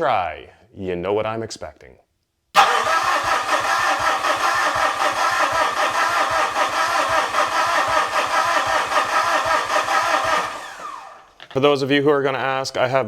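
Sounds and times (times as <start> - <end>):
diesel engine starter cranking: 2.6 - 11.4.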